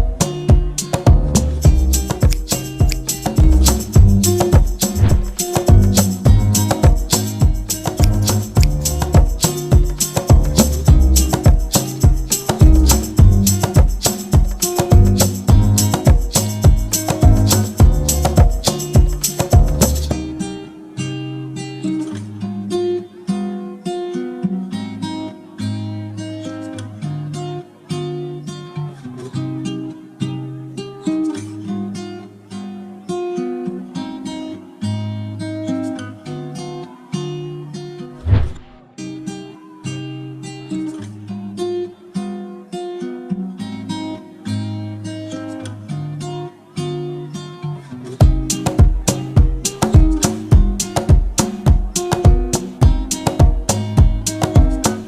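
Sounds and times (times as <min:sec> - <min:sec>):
heavy percussive beats: 0:00.0 - 0:20.2, 0:48.2 - 0:55.0
acoustic guitar strumming: 0:00.0 - 0:55.0.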